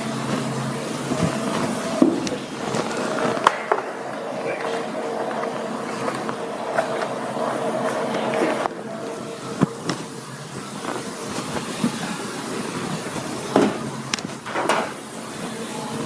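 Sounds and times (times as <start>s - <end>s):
items knocking and clattering: 1.2s - 7.1s, 13.5s - 15.0s.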